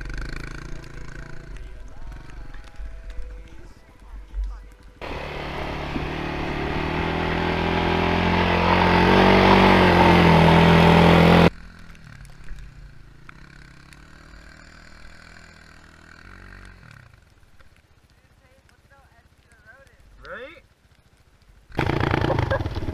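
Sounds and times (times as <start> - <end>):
quad engine revving: 5.0 - 11.5, 21.8 - 22.9.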